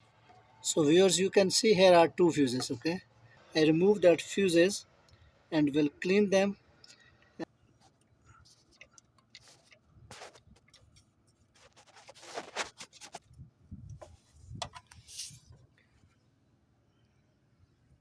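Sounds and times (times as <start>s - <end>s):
scraping and rubbing: 8.4s - 10.9s, 11.5s - 13.3s, 14.0s - 15.6s.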